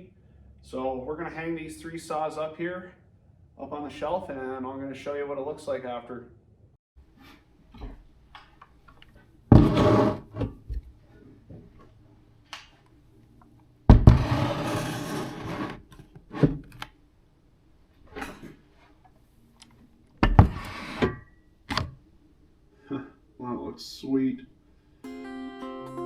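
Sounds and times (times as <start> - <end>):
chainsaws knocking and scraping on wood: 9.5 - 10.5, 13.9 - 16.6.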